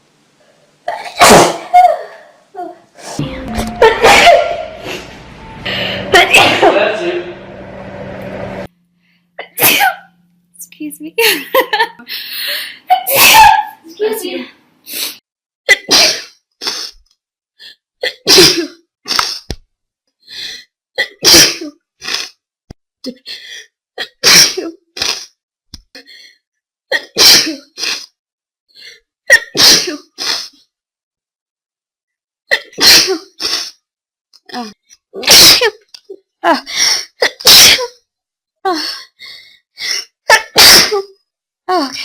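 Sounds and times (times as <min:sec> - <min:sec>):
person sneezing: 0:00.9 - 0:02.2, 0:13.1 - 0:13.7, 0:40.3 - 0:41.1.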